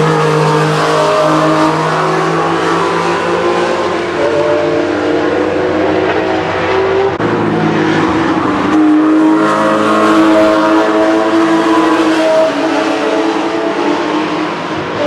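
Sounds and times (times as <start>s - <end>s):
sports car engines racing: 0.0s - 15.0s.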